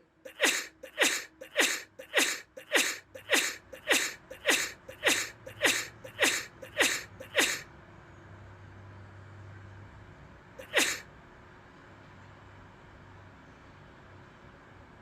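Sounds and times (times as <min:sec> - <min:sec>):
person sneezing: 0:00.3 - 0:07.6, 0:10.6 - 0:11.0.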